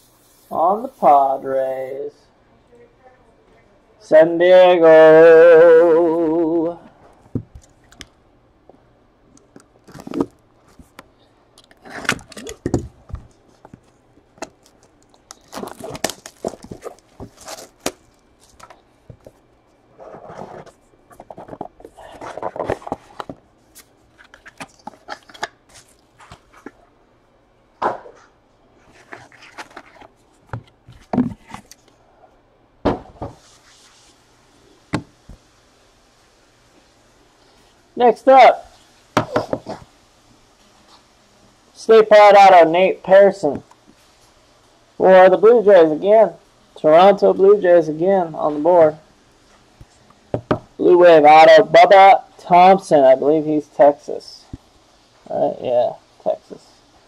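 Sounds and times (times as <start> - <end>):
cards and packaging handled: 9.4 - 26.8, 28.8 - 32.0.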